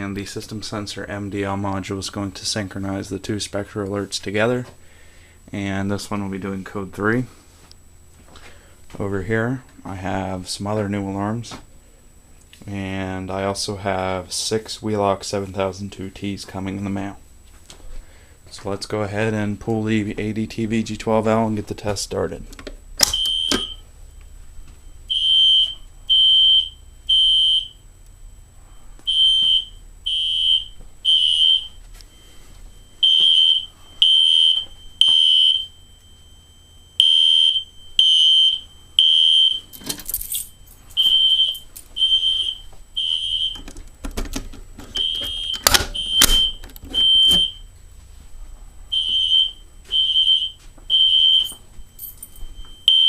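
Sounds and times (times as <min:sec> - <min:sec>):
fire alarm horn beeps: 0:23.0 - 0:24.3, 0:24.9 - 0:39.7, 0:40.5 - 0:43.6, 0:45.0 - 0:47.7, 0:48.9 - 0:53.0
thin steady high tone: 0:23.3 - 0:43.4, 0:51.4 - 0:53.0.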